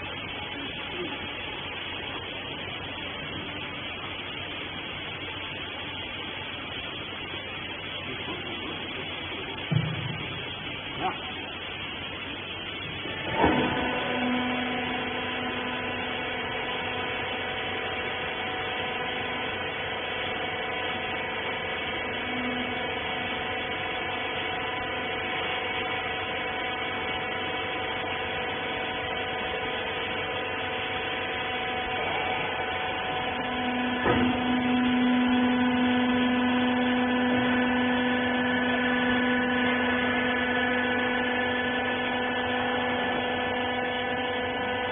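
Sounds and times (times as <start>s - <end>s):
baler motor and pump humming: 0.0s - 44.9s
knock: 9.7s - 10.2s.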